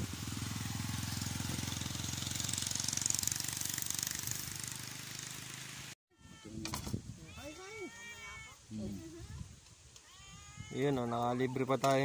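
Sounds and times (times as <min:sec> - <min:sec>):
motorcycle engine running: 0:00.0 - 0:06.0.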